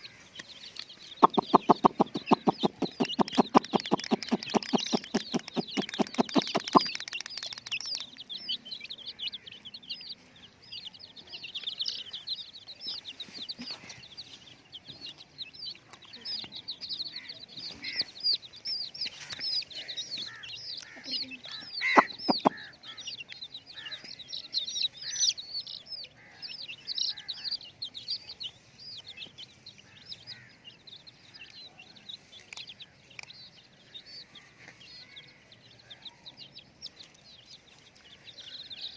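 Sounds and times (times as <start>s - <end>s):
chicks peeping: 0.0s - 38.9s
rapid buzzing pulses: 1.2s - 7.0s.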